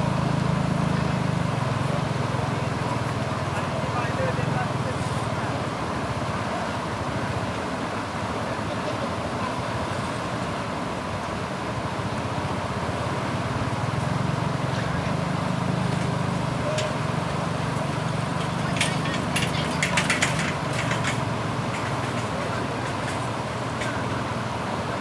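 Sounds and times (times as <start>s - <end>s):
vehicle engine running: 0.0s - 6.3s, 12.0s - 25.0s
clicks and rattles: 15.6s - 24.3s.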